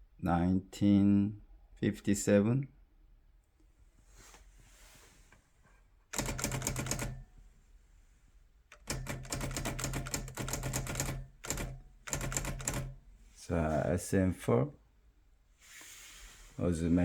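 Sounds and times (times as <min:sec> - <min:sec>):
typewriter keystrokes: 0:06.2 - 0:07.2, 0:08.7 - 0:13.0.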